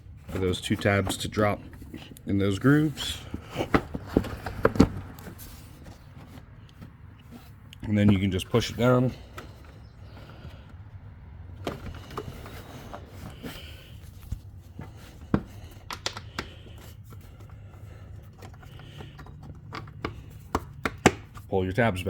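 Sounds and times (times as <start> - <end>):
plastic clicks and knocks: 14.3 - 16.6, 18.2 - 21.5.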